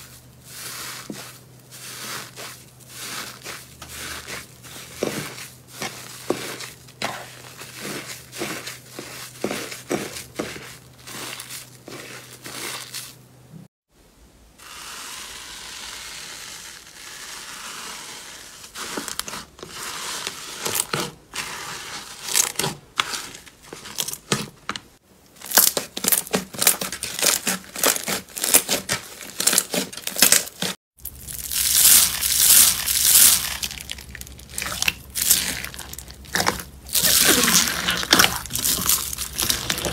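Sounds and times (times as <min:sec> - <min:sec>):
hissy slime squish: 0:00.0 - 0:13.2, 0:31.0 - 0:39.9
slime crackling and popping: 0:31.0 - 0:39.9.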